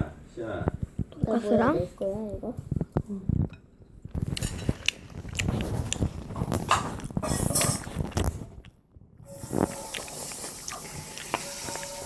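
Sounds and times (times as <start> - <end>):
chewing food: 4.1 - 7.2, 9.4 - 12.0.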